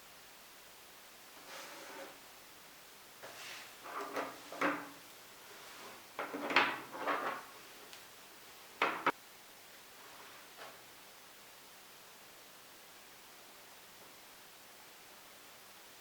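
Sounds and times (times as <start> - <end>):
drawer scraping and knocking: 1.4 - 2.2, 3.2 - 5.0, 5.6 - 7.5, 8.8 - 9.1
sharp knocks: 8.8 - 9.1.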